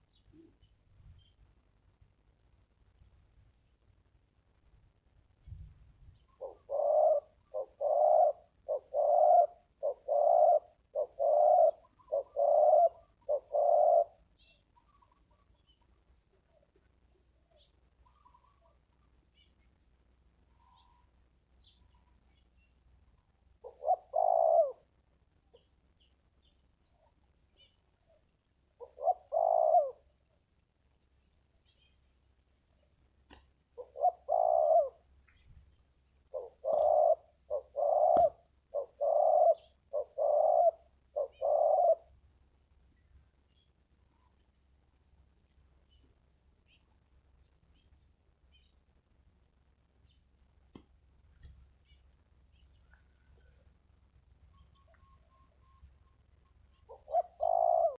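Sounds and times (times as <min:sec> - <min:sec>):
dove cooing: 0:06.2 - 0:15.6, 0:23.6 - 0:24.9, 0:28.8 - 0:30.2, 0:33.8 - 0:35.1, 0:36.3 - 0:42.2, 0:56.8 - 0:58.0.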